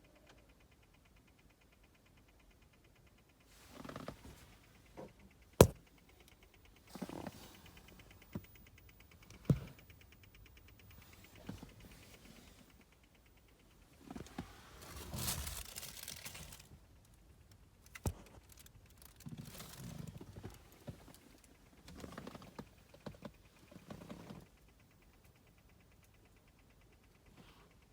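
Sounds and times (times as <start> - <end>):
faint rapid ticking from car: 0.0 - 27.9
rustling and handling noises: 13.9 - 16.7, 17.9 - 23.0.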